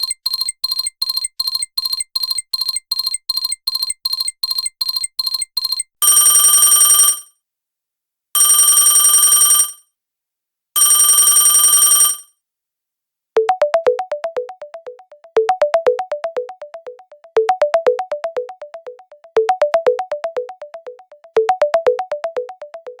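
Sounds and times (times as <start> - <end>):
phone beeps: 0.0 - 7.1, 13.4 - 23.0
plucked ringtone melody: 13.4 - 23.0.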